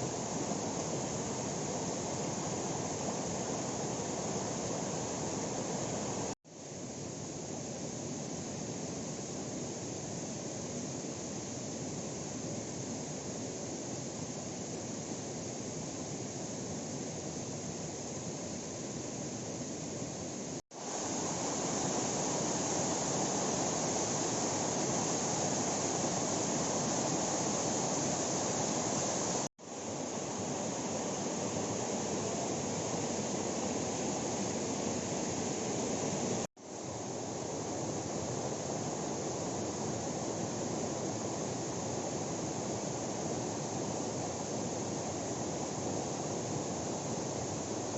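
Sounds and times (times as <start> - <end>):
falling water rushing: 20.8 - 29.5.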